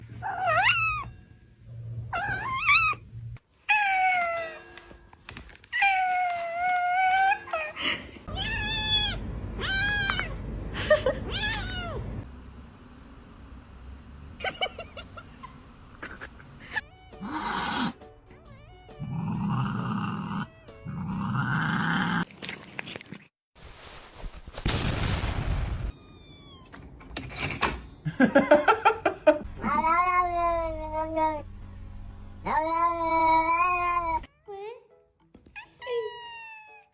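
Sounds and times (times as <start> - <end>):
cats growling and yowling: 2.1 - 3.0, 16.1 - 18.0, 18.8 - 22.3, 29.5 - 31.4, 32.4 - 34.3
music: 16.8 - 21.4, 34.2 - 35.8
cat meowing: 29.6 - 31.4, 32.4 - 34.3.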